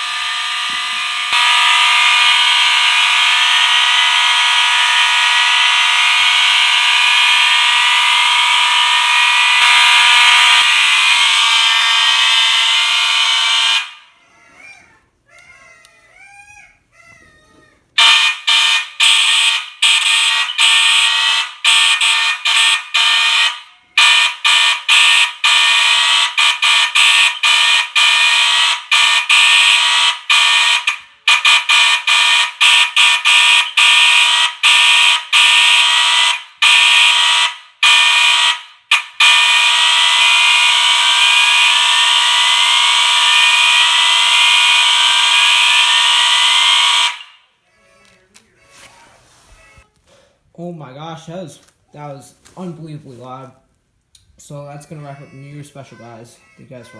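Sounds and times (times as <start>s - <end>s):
fire alarm horns and sirens: 0.0s - 14.2s, 18.0s - 47.6s.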